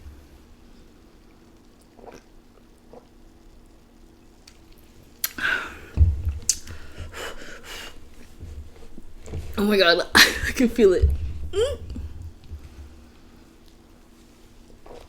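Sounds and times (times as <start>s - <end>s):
person gulping soda: 1.3s - 3.5s, 4.4s - 9.4s, 14.7s - 15.0s
low thump: 5.9s - 7.1s, 10.9s - 13.0s.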